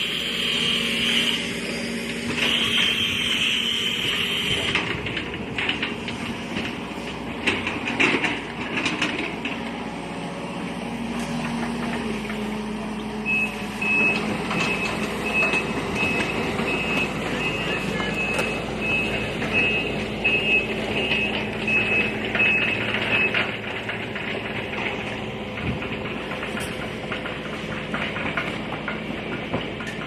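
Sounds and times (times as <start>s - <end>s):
reversing alarm beeping: 0.0s - 4.9s, 13.2s - 23.6s
heavy vehicle engine running: 0.0s - 30.0s.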